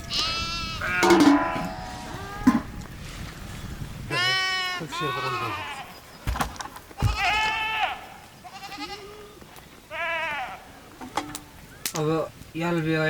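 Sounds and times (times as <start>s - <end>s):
sheep bleating: 0.0s - 2.5s, 4.1s - 6.0s, 7.0s - 10.8s.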